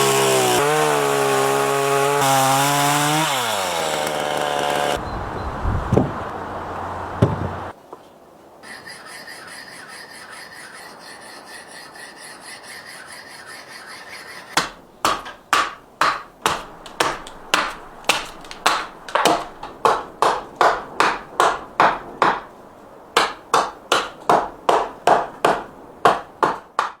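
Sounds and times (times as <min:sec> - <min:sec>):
tool rubbing wooden cup: 0:08.7 - 0:14.6.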